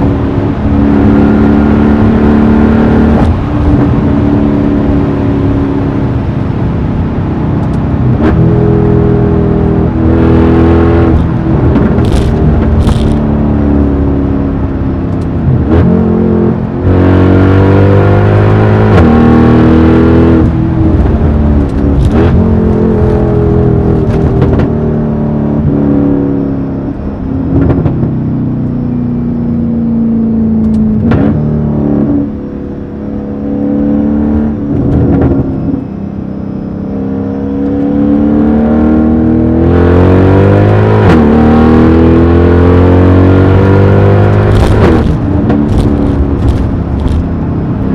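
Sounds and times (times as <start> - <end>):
car engine accelerating through gears: 0.0 - 47.9
exhaust cracks: 11.1 - 13.3, 20.5 - 24.8, 44.3 - 47.4.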